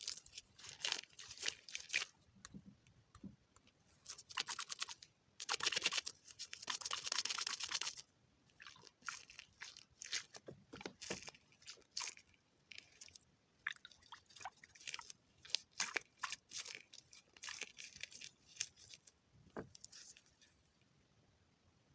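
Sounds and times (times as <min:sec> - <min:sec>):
crisp crunching and crackling: 0:00.0 - 0:02.1, 0:08.6 - 0:19.1.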